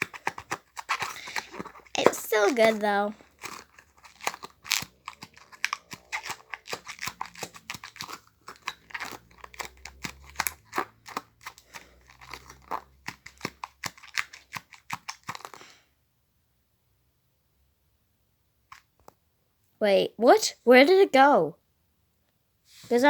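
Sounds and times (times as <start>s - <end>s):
plastic fidget toy crinkling: 0.0s - 15.7s.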